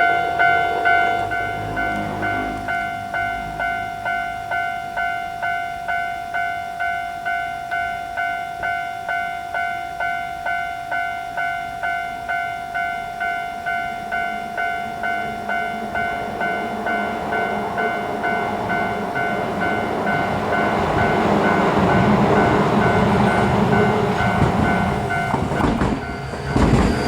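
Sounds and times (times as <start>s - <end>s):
train rumble: 0.0s - 6.0s, 13.6s - 27.0s
railroad crossing alarm ringing: 0.0s - 27.0s.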